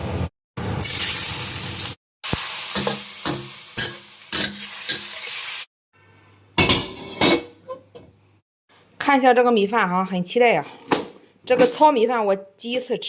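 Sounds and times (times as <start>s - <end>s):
food sizzling in a hot pan: 0.7s - 5.7s.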